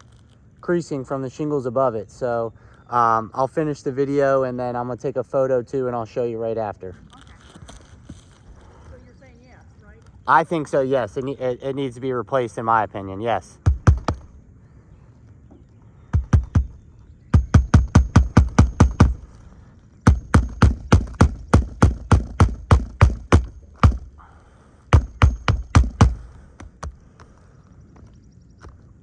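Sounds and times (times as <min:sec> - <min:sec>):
hammer striking roof shingles: 0:13.6 - 0:14.3, 0:16.0 - 0:27.4.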